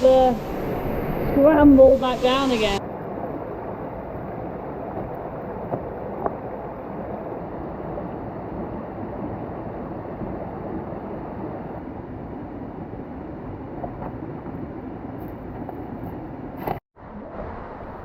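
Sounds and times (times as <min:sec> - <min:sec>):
rushing creek and waterfall: 0:00.0 - 0:02.8.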